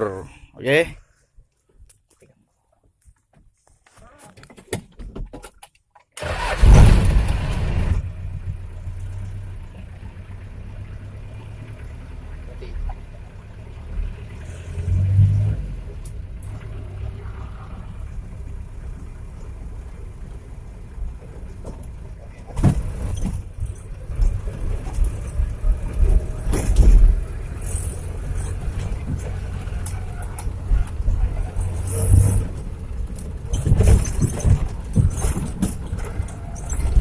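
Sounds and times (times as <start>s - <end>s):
knocks and jolts over rough track: 6.2s - 37.0s
vehicle engine rumble: 6.2s - 37.0s.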